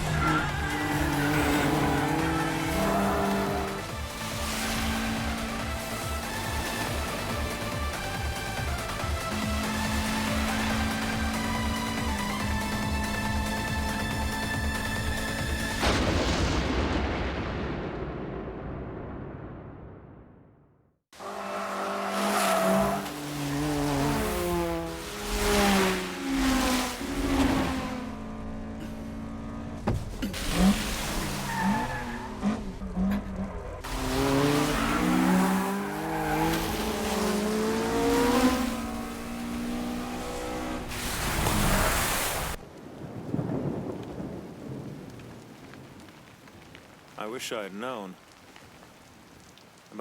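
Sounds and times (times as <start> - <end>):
tyres squealing: 0.0 - 3.8
racing car engines revving: 0.0 - 15.8, 21.2 - 42.6.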